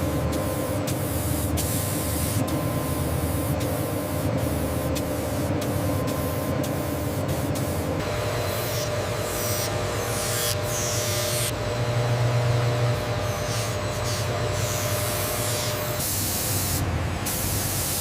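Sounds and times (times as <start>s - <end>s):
low machine hum: 0.0s - 16.0s
spraying hiss: 0.3s - 7.9s, 14.1s - 18.0s.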